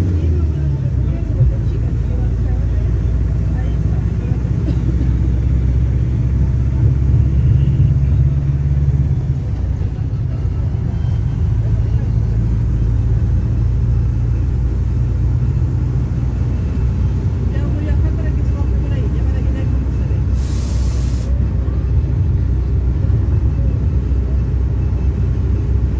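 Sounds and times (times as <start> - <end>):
bus diesel engine drone: 0.0 - 25.9.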